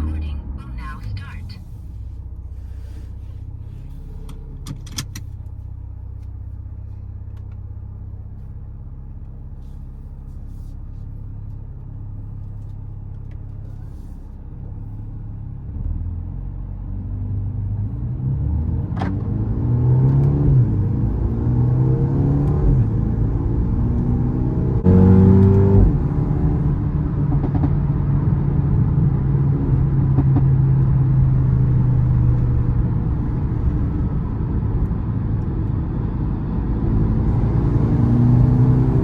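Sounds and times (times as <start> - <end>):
car engine revving: 15.8 - 39.0.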